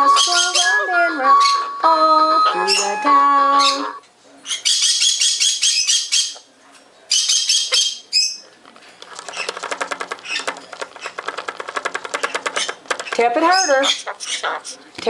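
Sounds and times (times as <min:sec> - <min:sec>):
parrot squawking: 0:00.0 - 0:06.5, 0:12.3 - 0:14.9
fast mechanical clicking: 0:08.7 - 0:13.5.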